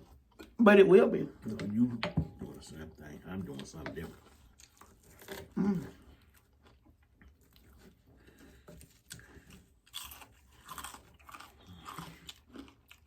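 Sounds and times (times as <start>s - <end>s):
person chewing crispy food: 3.5s - 13.0s.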